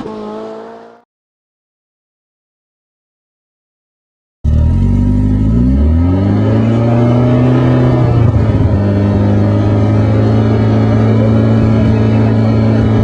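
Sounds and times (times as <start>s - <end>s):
car engine revving: 0.0s - 1.0s, 4.5s - 13.0s.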